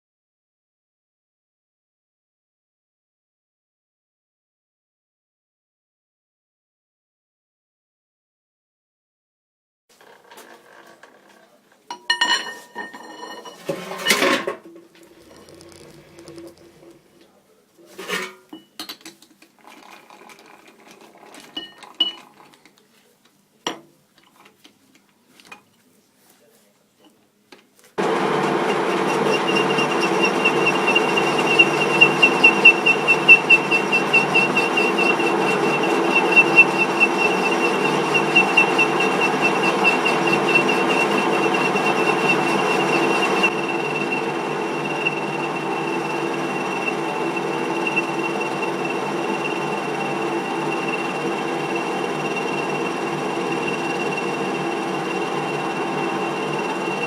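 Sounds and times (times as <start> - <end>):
metal lathe running: 13.0 - 17.1, 28.0 - 57.0
high machine whine: 28.0 - 57.0.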